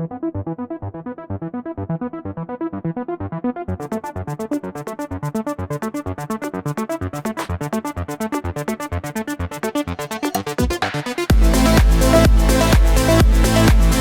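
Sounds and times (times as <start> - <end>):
synthesizer pattern: 3.2 - 14.0
hi-hat beat: 11.3 - 14.0.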